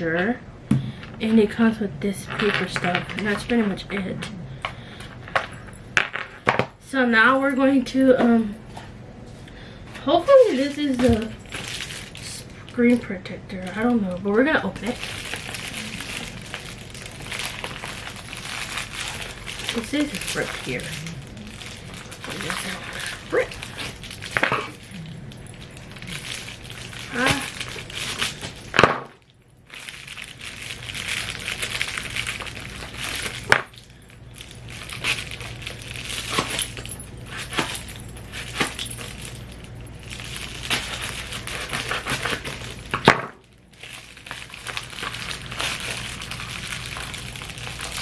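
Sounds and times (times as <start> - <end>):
packaging crinkling and rustling: 10.0 - 13.0, 13.6 - 48.0.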